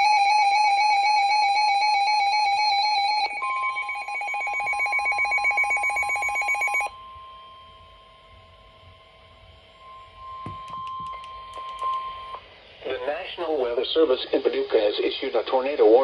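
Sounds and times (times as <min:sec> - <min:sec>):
steady alarm tone: 0:00.0 - 0:12.8
rapidly pulsing high beep: 0:02.5 - 0:08.2.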